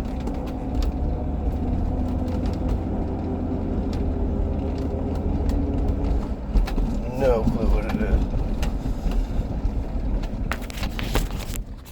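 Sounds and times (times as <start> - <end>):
low engine rumble in car cabin: 0.0 - 11.9.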